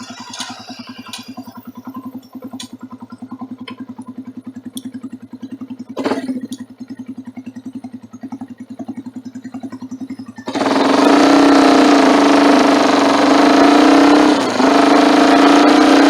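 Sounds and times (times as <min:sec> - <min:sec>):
motorcycle engine idling: 0:00.0 - 0:16.0
motorcycle engine revving: 0:00.0 - 0:16.0.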